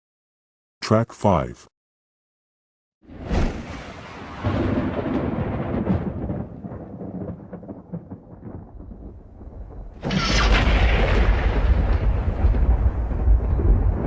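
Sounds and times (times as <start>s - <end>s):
sharp thunderclap: 3.0s - 14.0s
thunder rumbling: 3.1s - 14.0s.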